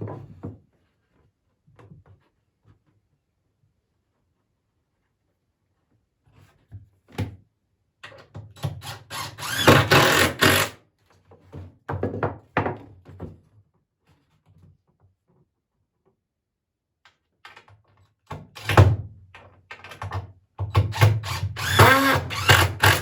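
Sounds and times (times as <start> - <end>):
cordless drill driving screws: 8.7 - 10.8, 20.9 - 23.0.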